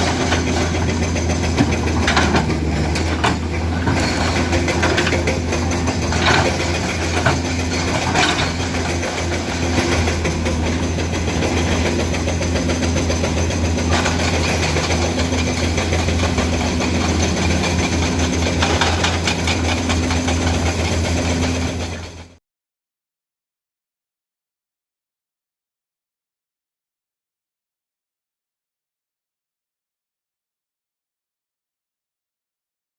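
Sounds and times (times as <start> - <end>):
excavator diesel engine running: 0.0 - 22.4.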